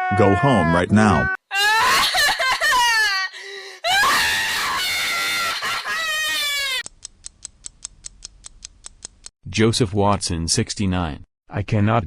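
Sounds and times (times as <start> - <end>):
high-pitched wailing cry: 0.0 - 6.8.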